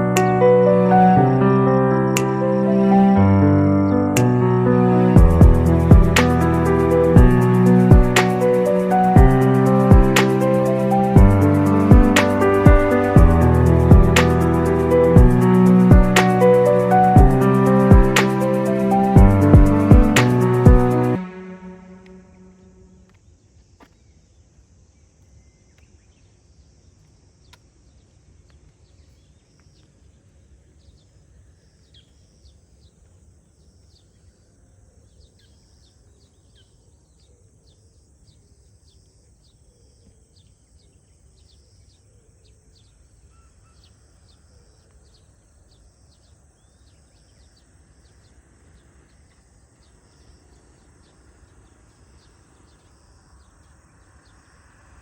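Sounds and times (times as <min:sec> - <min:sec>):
steady low rumble: 0:00.0 - 0:23.1.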